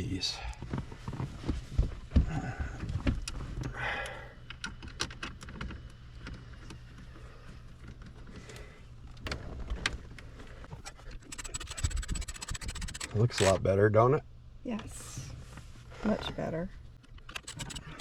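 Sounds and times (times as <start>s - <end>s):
steady low hum: 10.1s - 18.0s
plastic scrape: 10.9s - 13.6s, 17.4s - 18.0s.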